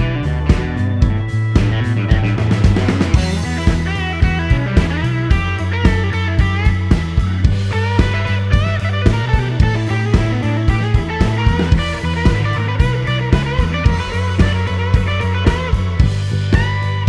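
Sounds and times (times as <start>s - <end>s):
electric guitar melody: 0.0s - 17.0s
rock drum beat: 0.0s - 17.0s.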